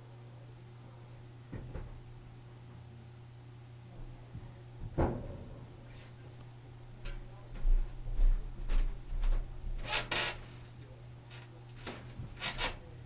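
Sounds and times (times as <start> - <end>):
steady low hum: 0.0 - 13.0
water heater knocking and ticking: 1.5 - 2.0, 7.0 - 10.5.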